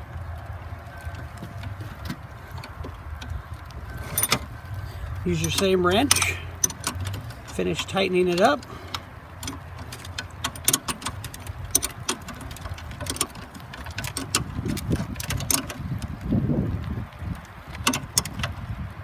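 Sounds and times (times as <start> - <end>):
wrench clicking on metal fitting: 5.3 - 15.8.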